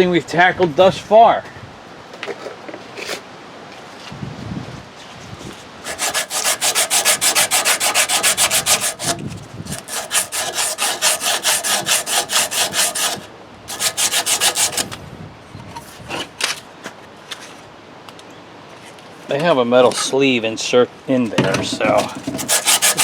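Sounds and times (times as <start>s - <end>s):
hand scrubbing wheel parts: 5.8s - 15.0s, 21.6s - 23.0s.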